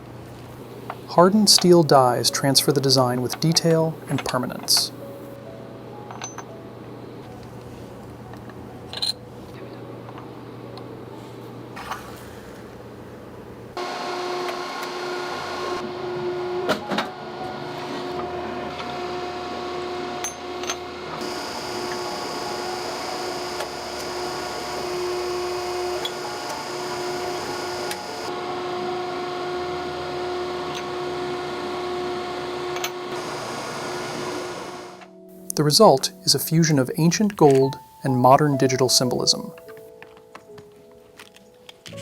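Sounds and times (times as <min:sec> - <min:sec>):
electric motor humming: 0:18.8 - 0:35.0.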